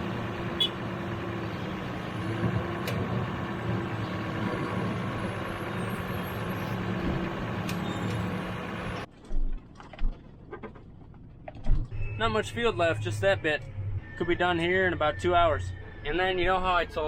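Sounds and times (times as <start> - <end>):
diesel engine running: 0.0 - 9.1.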